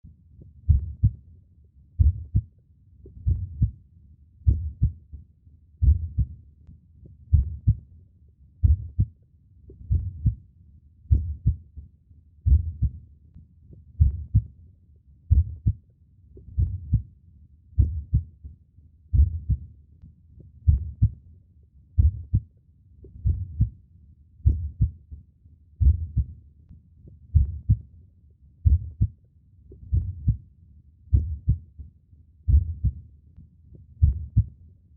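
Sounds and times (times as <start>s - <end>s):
heartbeat double thump: 3.2s - 3.7s, 5.8s - 6.3s, 9.8s - 10.4s, 12.5s - 12.9s, 15.3s - 15.8s, 16.5s - 17.0s, 19.1s - 19.6s, 22.0s - 22.4s, 23.2s - 23.7s, 25.8s - 26.3s, 28.6s - 29.1s, 32.5s - 33.0s, 34.0s - 34.5s.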